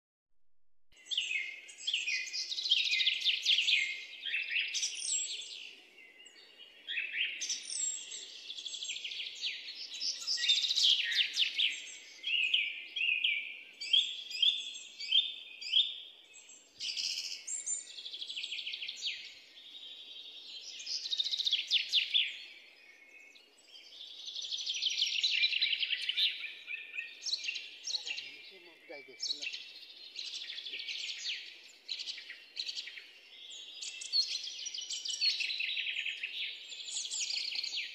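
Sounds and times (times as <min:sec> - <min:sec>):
birds chirping and singing: 0:01.0 - 0:37.9.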